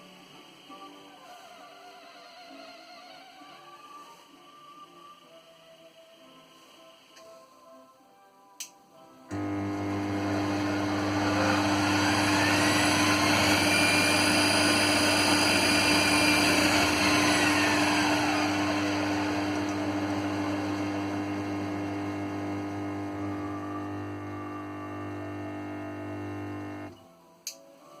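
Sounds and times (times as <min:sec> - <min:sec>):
lathe motor humming: 0:09.3 - 0:26.9.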